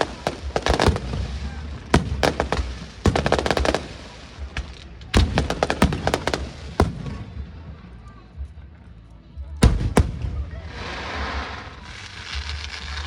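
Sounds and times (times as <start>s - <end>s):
fireworks bangs: 0.0s - 7.7s
fireworks crackling: 0.0s - 8.7s, 9.6s - 13.0s.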